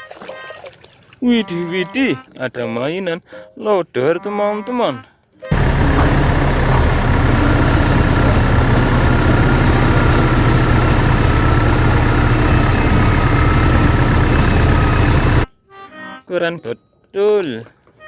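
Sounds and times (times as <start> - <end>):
diesel engine idling: 5.5 - 15.5.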